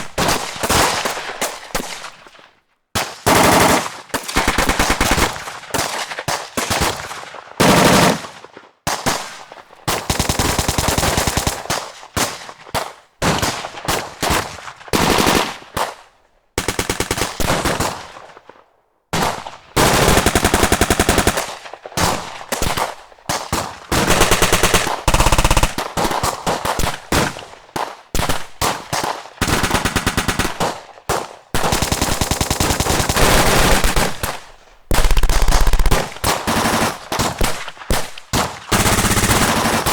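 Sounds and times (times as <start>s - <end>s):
automatic machine-gun fire: 3.3s - 5.9s, 7.6s - 8.3s, 10.0s - 11.8s, 16.6s - 18.1s, 19.8s - 23.0s, 23.9s - 27.5s, 28.2s - 39.9s.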